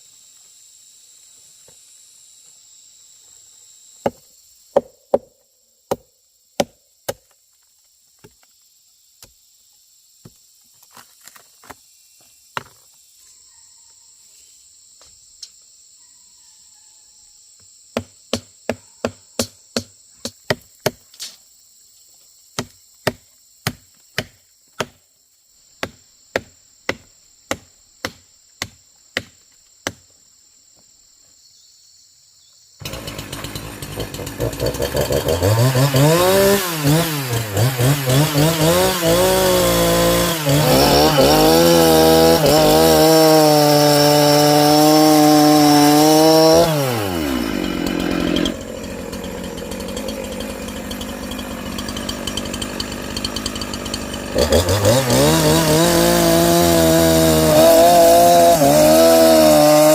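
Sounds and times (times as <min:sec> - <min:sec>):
insects droning: 0:00.0 - 0:58.7
hand tool striking wood: 0:04.8 - 0:05.3, 0:18.0 - 0:21.3, 0:22.6 - 0:25.0, 0:25.8 - 0:30.0.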